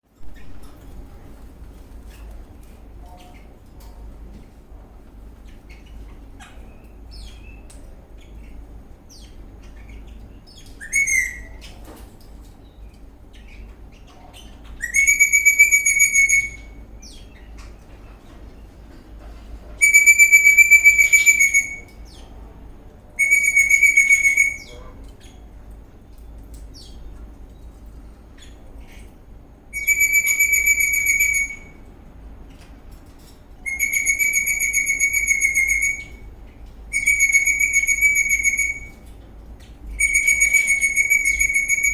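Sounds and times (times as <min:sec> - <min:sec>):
soft bird chirps: 0:05.3 - 0:18.8, 0:23.1 - 0:31.9
parrot whistling: 0:10.8 - 0:11.5, 0:14.8 - 0:16.8, 0:19.8 - 0:21.9, 0:23.2 - 0:24.8, 0:29.7 - 0:31.8, 0:33.7 - 0:36.2, 0:36.9 - 0:39.0, 0:40.0 - 0:41.9.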